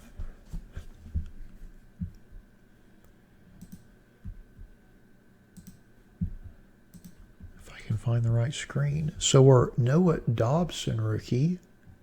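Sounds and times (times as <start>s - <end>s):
computer mouse clicks: 3.0s - 3.9s, 5.6s - 7.3s.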